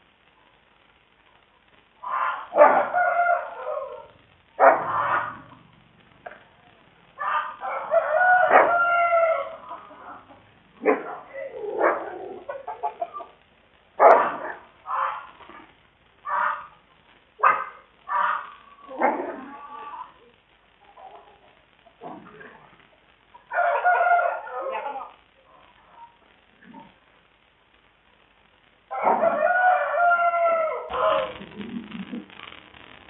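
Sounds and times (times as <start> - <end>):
chickens squawking and crowing: 2.0 - 5.7, 7.2 - 13.4, 14.1 - 15.5, 16.2 - 16.8, 17.5 - 20.3, 23.3 - 26.2, 28.9 - 32.4.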